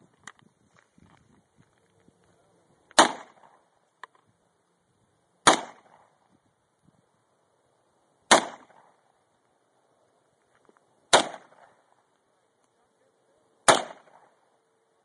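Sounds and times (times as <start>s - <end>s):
gunshots with echo: 3.0s - 3.5s, 13.7s - 14.4s.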